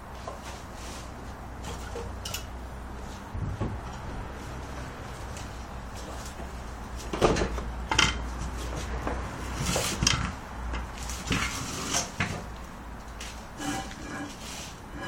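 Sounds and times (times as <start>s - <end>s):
knocks and clanks of trailer gear: 6.1s - 12.5s.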